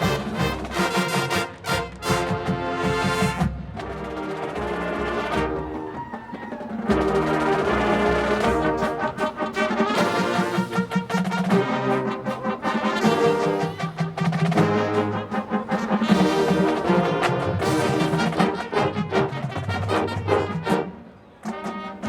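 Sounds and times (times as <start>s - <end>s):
drum strokes: 0.0s - 18.6s
brass section holding chords: 0.0s - 21.0s.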